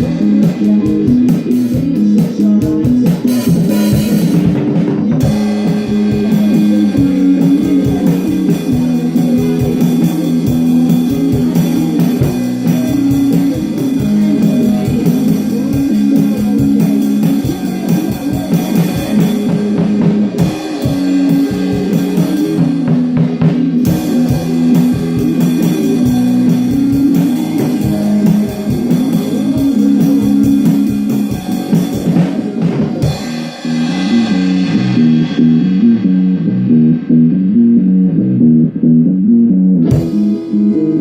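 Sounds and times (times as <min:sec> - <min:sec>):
drum kit: 0:00.0 - 0:41.0
electric guitars and bass: 0:00.0 - 0:41.0.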